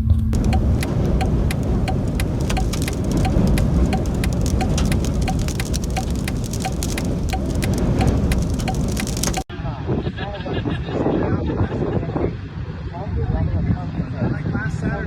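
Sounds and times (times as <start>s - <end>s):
wind rushing and buffeting: 0.3s - 9.5s
faint regular tick: 0.4s - 9.5s
small sharp hits: 0.4s - 9.5s.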